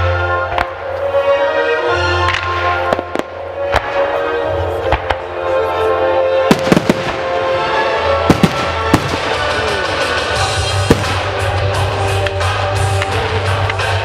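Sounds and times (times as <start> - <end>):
music with held notes: 0.0 - 14.0
fireworks bursting: 6.5 - 12.4.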